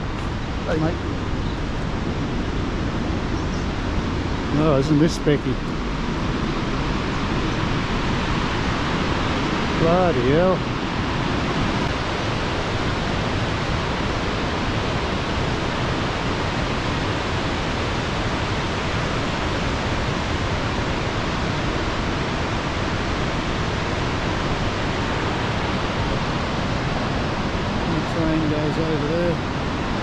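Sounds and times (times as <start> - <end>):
waterfall rushing: 6.6 - 30.0.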